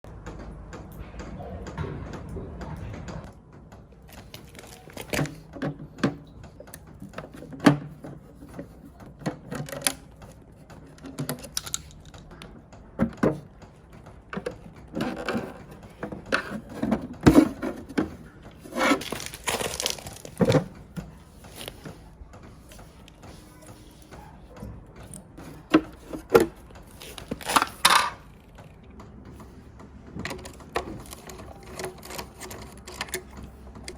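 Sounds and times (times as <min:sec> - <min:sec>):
hand tools clicking and clinking: 0:13.1 - 0:33.9.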